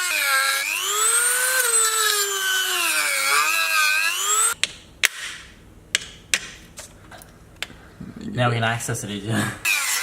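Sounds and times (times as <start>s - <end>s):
rotary tool cutting plastic: 0.0s - 4.6s.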